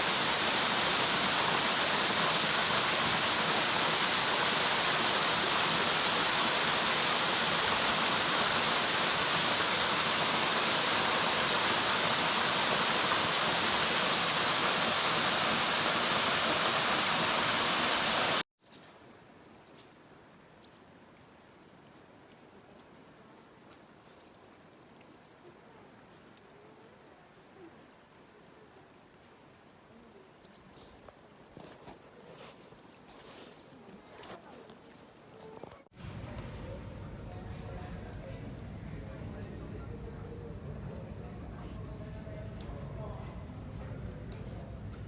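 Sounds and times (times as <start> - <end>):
waterfall rushing: 0.0 - 18.4.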